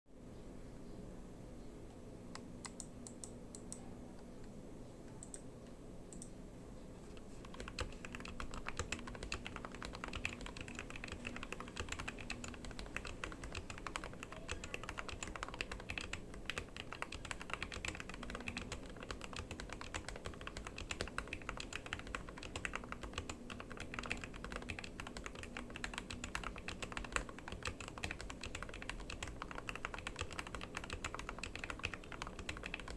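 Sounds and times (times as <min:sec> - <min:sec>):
mechanical keyboard typing: 0:07.4 - 0:32.9.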